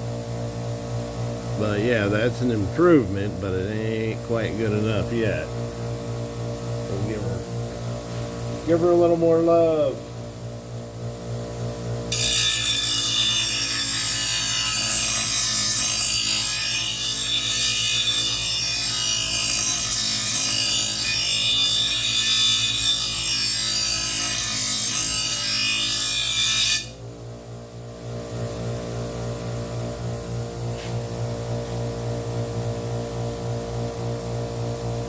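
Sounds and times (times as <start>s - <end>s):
blade grinding on grinder stone: 12.1s - 27.0s.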